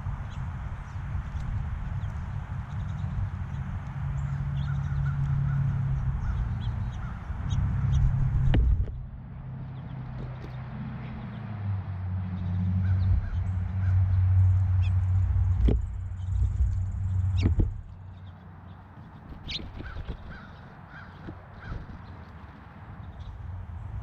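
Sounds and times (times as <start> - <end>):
low steady rumble: 0.0 - 24.0
faint bird calls: 17.0 - 22.3.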